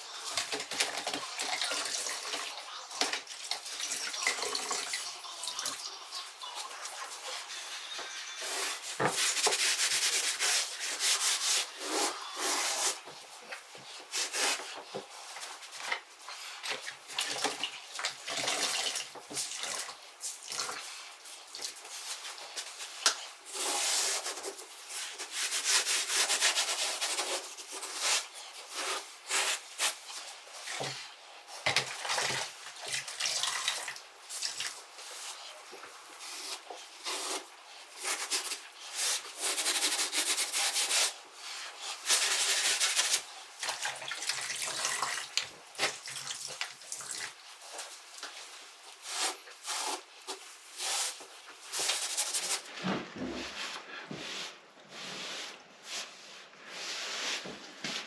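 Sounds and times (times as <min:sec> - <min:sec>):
cloth rubbing on tiles: 0:06.9 - 0:15.8, 0:21.8 - 0:30.9, 0:34.3 - 0:43.6, 0:47.1 - 0:52.8.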